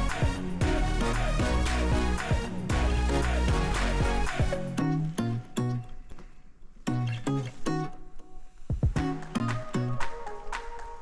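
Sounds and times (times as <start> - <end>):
music with strong bass beat: 0.0 - 4.8.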